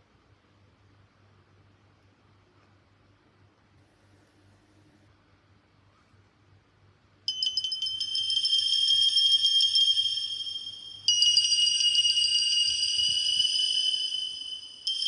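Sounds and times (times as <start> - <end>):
chime-like ringtone: 7.3 - 15.0.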